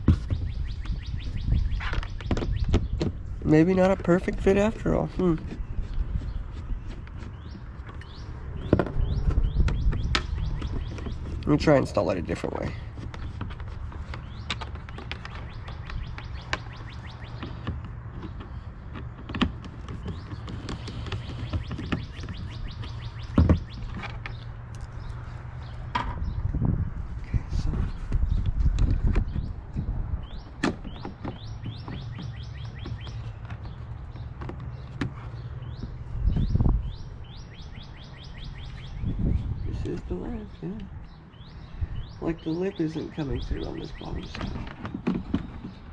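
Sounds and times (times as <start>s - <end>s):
small birds chirping: 0.0s - 45.9s.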